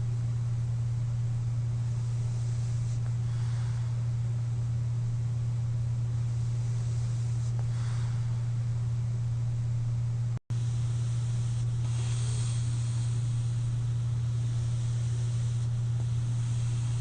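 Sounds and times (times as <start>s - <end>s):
steady low hum: 0.0s - 17.0s
soft breathing: 1.8s - 4.6s, 6.1s - 8.8s, 10.5s - 17.0s.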